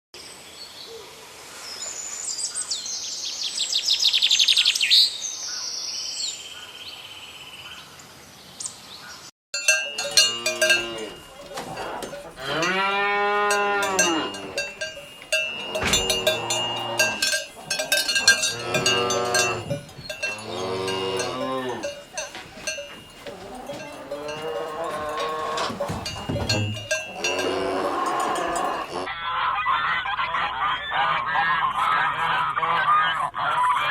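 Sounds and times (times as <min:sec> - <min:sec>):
cowbells ringing: 0:09.6 - 0:29.1
cows mooing: 0:09.6 - 0:29.1.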